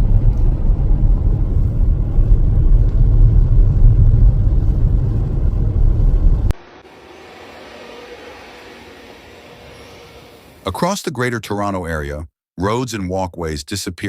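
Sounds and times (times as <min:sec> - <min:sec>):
loud low rumble: 0:00.0 - 0:10.7.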